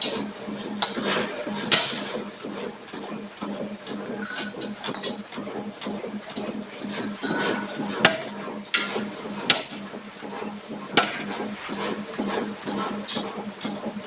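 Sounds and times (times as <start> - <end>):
low hum: 3.6 - 14.0
forging hammer striking steel: 4.2 - 5.3.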